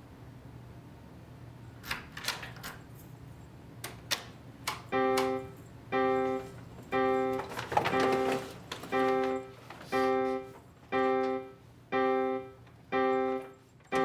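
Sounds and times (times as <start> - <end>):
electronic alarm tone: 4.9 - 14.0.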